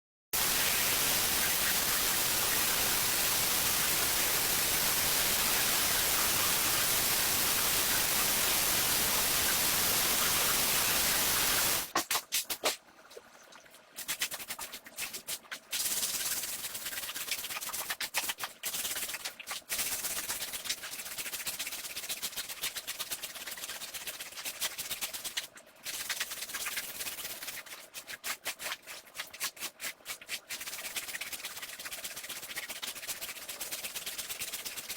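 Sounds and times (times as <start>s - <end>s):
loud steady hiss: 0.4s - 11.9s.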